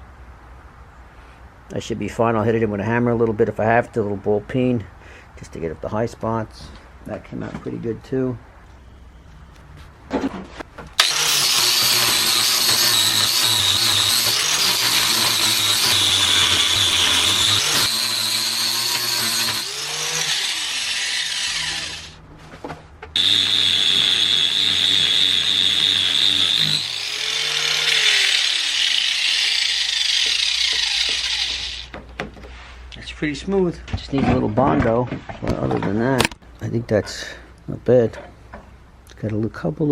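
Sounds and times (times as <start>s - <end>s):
power grinder grinding metal: 11.0s - 22.2s, 23.2s - 31.9s.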